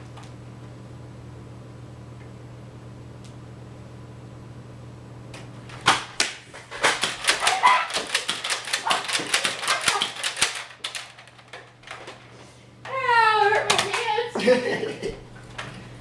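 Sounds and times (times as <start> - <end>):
steady low hum: 0.0 - 16.0
sharp clicks and knocks: 5.4 - 12.2.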